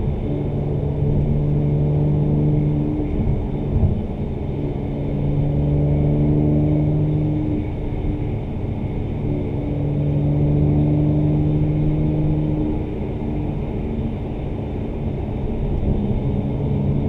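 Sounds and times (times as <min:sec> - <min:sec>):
car engine drone from cabin: 0:00.0 - 0:17.0.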